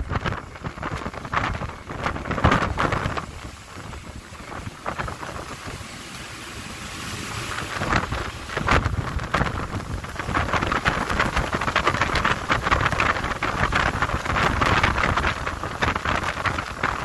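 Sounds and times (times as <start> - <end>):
wind buffeting microphone: 0.0 - 6.0, 6.7 - 17.0
low engine rumble: 0.0 - 17.0
rushing water: 0.0 - 17.0.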